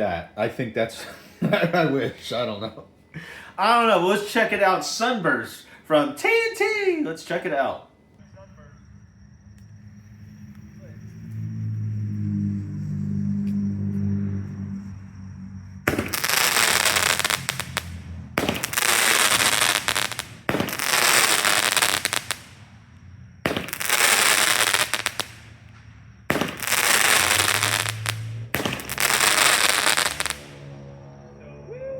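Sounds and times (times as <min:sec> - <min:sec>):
firework shots hissing and crackling: 0:15.8 - 0:30.6.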